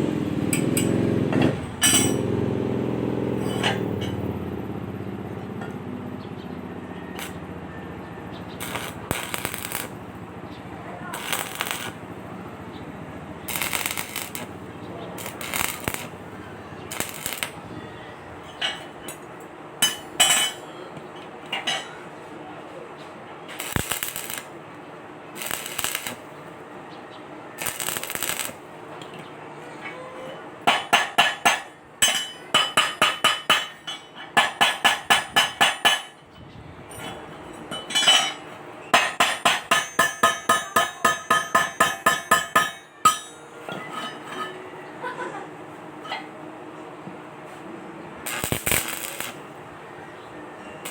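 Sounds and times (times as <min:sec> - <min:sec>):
hammer striking metal: 0:00.5 - 0:02.3, 0:08.6 - 0:09.9, 0:19.8 - 0:20.7, 0:30.7 - 0:36.2, 0:37.7 - 0:44.6.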